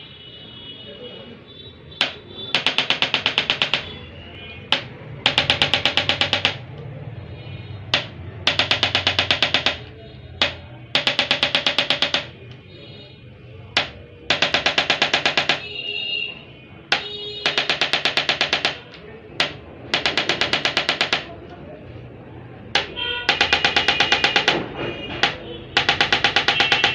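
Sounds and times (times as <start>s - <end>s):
electric adjusting instrument tapping: 2.0s - 4.0s, 4.7s - 6.8s, 7.9s - 12.6s, 16.9s - 21.4s, 22.8s - 24.6s, 25.2s - 26.9s.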